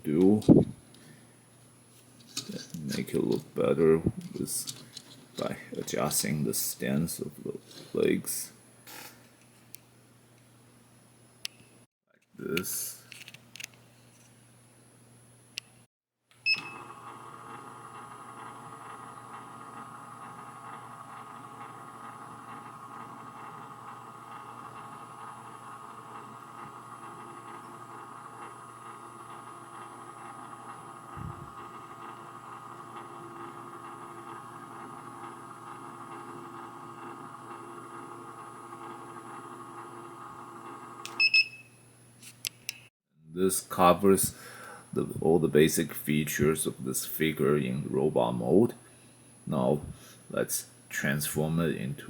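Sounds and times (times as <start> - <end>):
steady multi-tone hum: 0.0 - 15.9.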